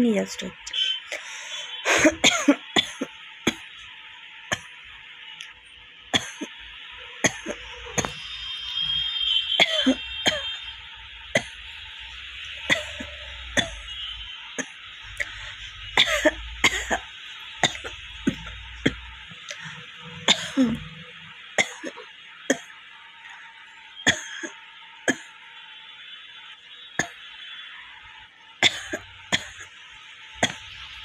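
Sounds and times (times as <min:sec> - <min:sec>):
woman coughing dry coughs: 0:01.9 - 0:03.7, 0:06.1 - 0:06.6, 0:07.2 - 0:08.2, 0:09.6 - 0:10.6, 0:12.7 - 0:13.9, 0:16.0 - 0:17.0, 0:17.6 - 0:18.4, 0:20.3 - 0:20.9, 0:21.6 - 0:22.7, 0:24.1 - 0:25.3, 0:28.6 - 0:29.7, 0:30.4 - 0:30.7.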